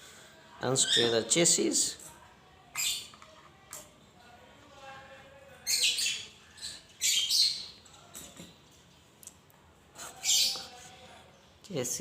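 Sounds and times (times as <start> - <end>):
birds chirping: 0.6 - 3.3, 5.3 - 12.0.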